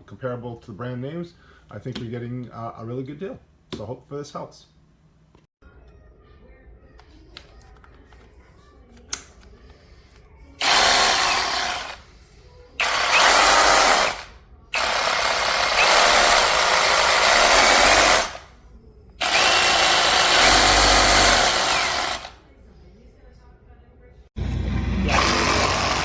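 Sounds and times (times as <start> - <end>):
reciprocating saw running: 10.6 - 12.0, 12.8 - 18.5, 19.2 - 22.4, 24.4 - 26.0.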